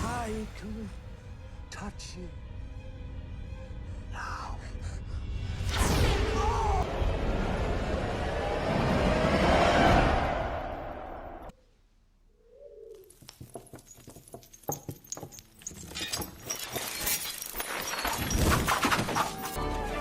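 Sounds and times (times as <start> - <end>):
bird cooing: 12.4 - 13.2.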